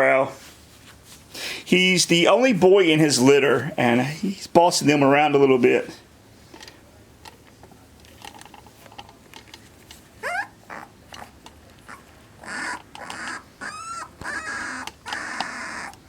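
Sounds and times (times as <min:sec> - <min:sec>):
puppy squealing: 0:10.2 - 0:16.0
puppy yipping: 0:10.2 - 0:16.0.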